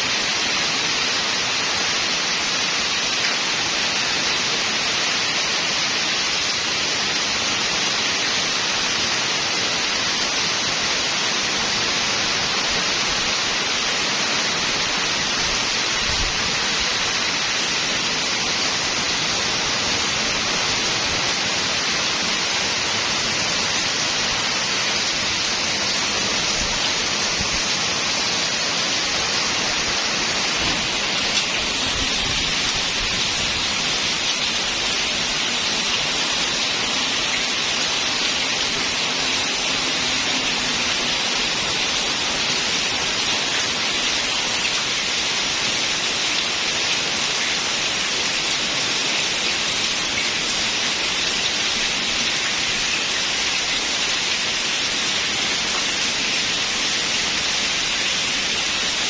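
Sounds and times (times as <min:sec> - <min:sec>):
rain falling steadily: 0:00.0 - 0:59.0.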